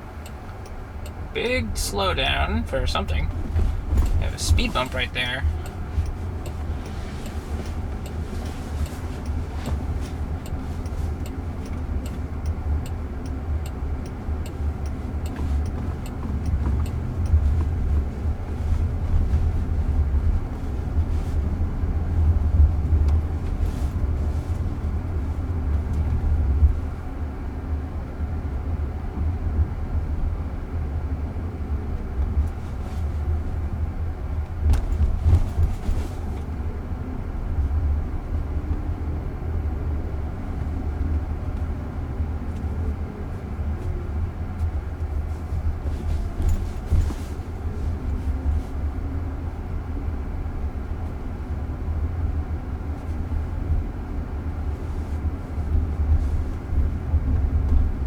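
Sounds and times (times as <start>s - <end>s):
road and tyre rumble in car: 0.0s - 58.0s
faint ticks: 4.8s - 19.4s.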